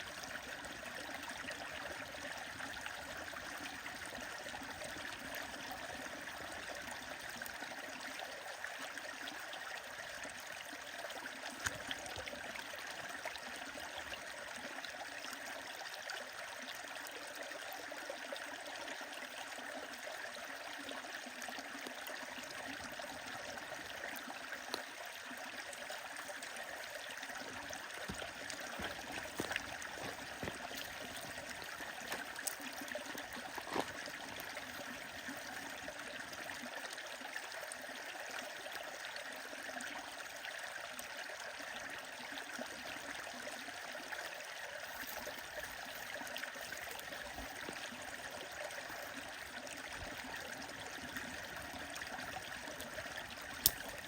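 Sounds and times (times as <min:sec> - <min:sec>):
stream flowing: 0:00.0 - 0:54.0
wood fire crackling and popping: 0:53.5 - 0:54.0.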